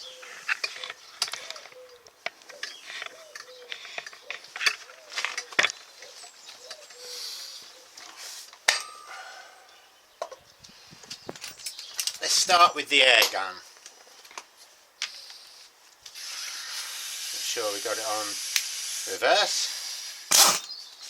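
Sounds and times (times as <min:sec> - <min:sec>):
pigeon cooing: 0:00.0 - 0:09.9.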